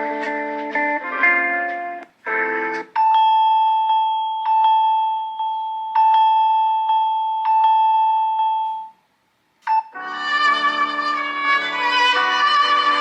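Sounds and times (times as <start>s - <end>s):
plucked guitar ringtone: 0.0s - 8.9s, 9.8s - 13.0s
bell-like chime ringtone: 3.0s - 9.0s.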